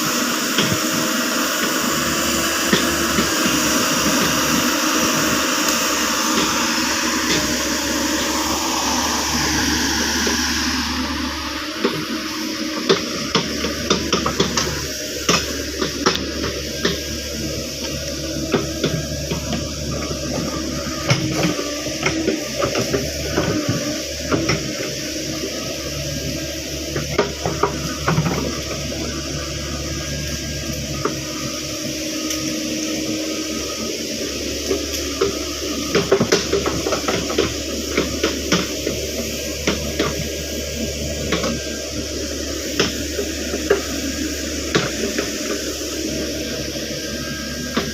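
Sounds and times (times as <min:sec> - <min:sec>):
excavator diesel engine running: 0:00.0 - 0:47.9.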